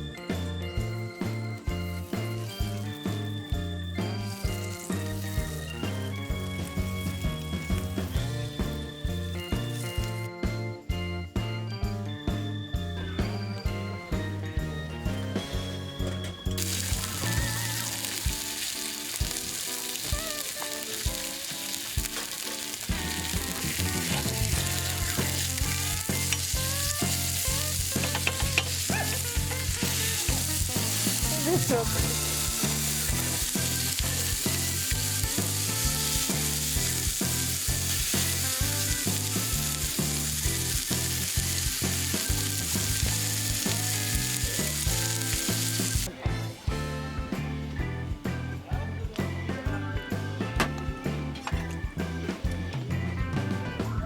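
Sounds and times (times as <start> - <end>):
food sizzling in a pan: 1.9 - 8.8, 16.6 - 46.1.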